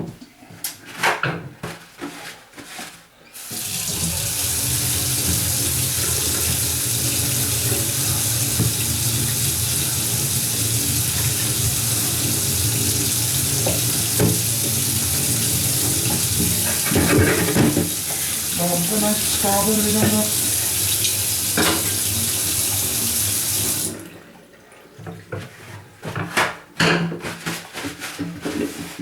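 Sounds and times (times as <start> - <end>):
tap water running into sink: 3.4 - 24.2.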